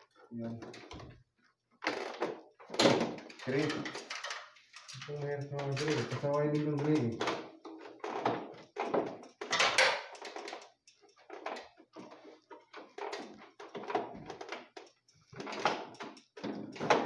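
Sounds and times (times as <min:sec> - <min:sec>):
plastic cover clicks and rattles: 0:01.8 - 0:17.0.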